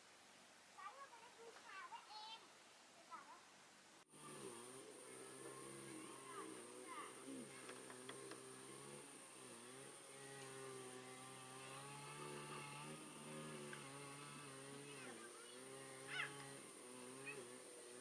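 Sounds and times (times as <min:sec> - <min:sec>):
small engine humming: 0:04.1 - 0:18.0.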